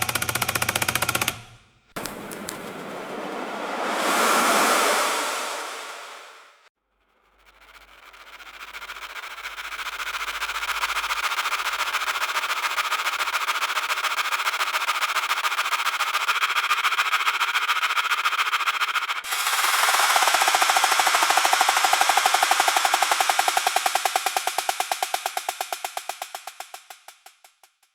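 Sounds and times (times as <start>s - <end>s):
aeration fan pulsing drone: 2.0s - 6.6s, 19.3s - 24.5s.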